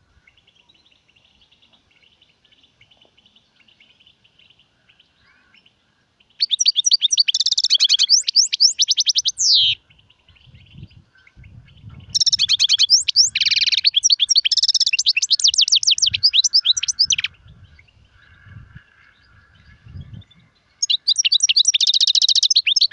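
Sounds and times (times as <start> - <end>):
bird twittering trills: 0.2 - 22.9.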